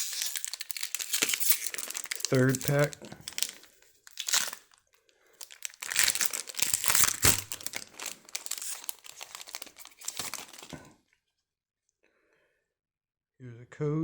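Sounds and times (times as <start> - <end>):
foil wrapper tearing and crinkling: 0.0 - 10.9.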